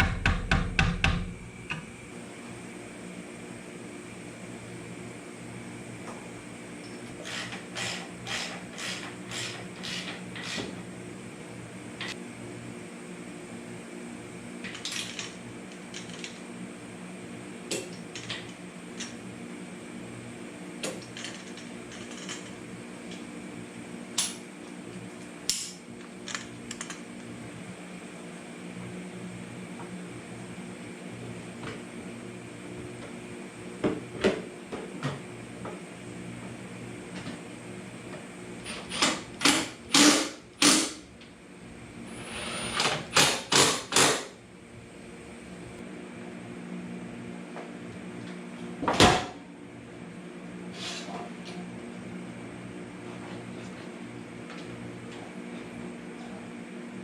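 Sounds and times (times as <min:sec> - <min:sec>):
steady mechanical hum: 0:00.0 - 0:57.0.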